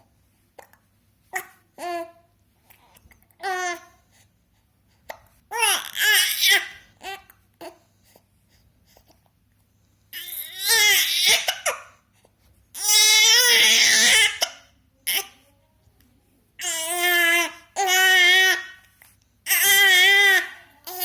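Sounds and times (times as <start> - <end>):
baby crying and fussing: 5.5 - 7.8, 10.1 - 12.0, 12.7 - 15.3.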